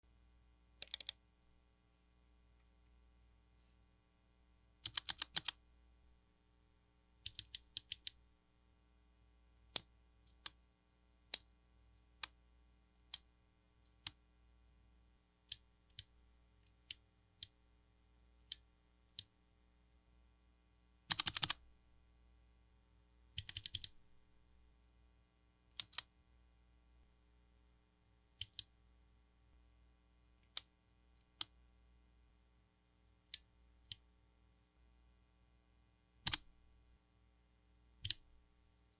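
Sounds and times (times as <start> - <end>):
mechanical keyboard keystrokes: 0.8 - 1.2, 4.9 - 5.5, 21.1 - 21.6, 23.4 - 23.9.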